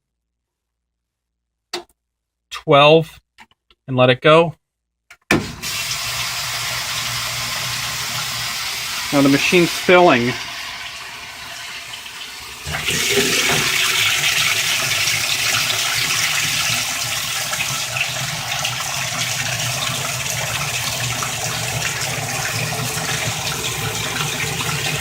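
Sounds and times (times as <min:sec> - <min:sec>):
water pouring into washing machine: 0:05.3 - 0:25.0.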